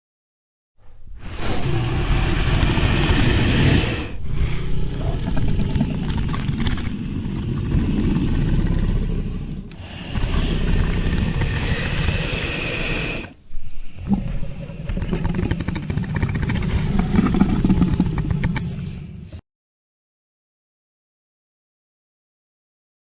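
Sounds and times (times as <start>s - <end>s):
loud rumbling rushing noise: 1.1s - 6.0s.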